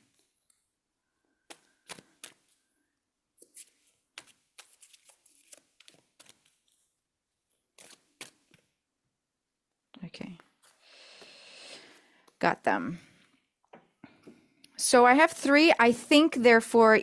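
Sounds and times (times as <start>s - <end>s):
cards being shuffled: 1.4s - 2.6s, 3.4s - 6.9s, 7.6s - 8.7s.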